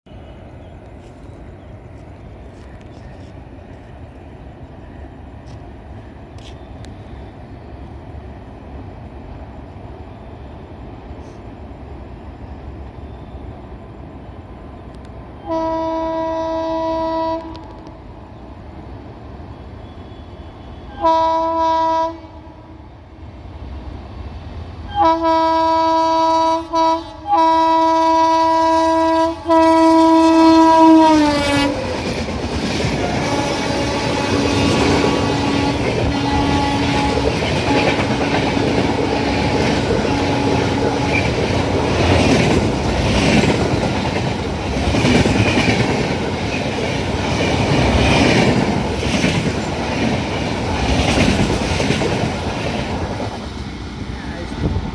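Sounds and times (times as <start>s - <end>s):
low rumble of approaching train: 0.0s - 54.9s
train horn blasts: 15.4s - 17.9s, 20.0s - 22.9s, 24.9s - 32.0s, 33.0s - 41.6s
wheels clattering on rails: 31.7s - 54.7s.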